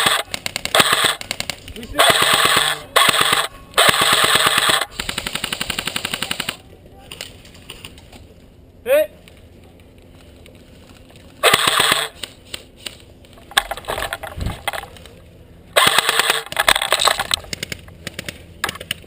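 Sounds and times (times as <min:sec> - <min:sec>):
airsoft gun full-auto bursts: 0:00.0 - 0:06.6, 0:11.4 - 0:12.3, 0:15.8 - 0:18.4
single shots and clicks: 0:00.0 - 0:06.6, 0:11.4 - 0:12.4, 0:15.8 - 0:19.0.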